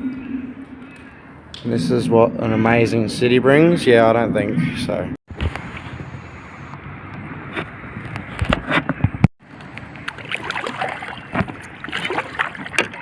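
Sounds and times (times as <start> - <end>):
water sloshing and splashing: 9.4 - 13.0.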